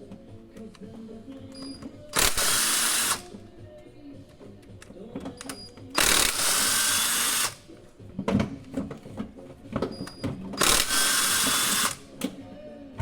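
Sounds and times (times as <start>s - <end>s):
power tool running: 2.2s - 3.3s, 6.0s - 7.7s, 10.6s - 12.0s.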